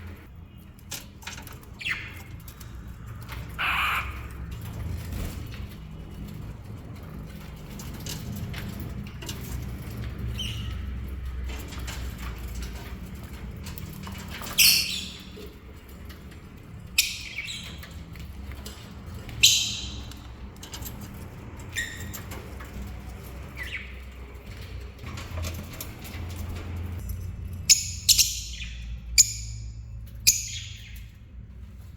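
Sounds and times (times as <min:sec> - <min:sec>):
lovebirds shrieking: 0:03.5 - 0:04.5.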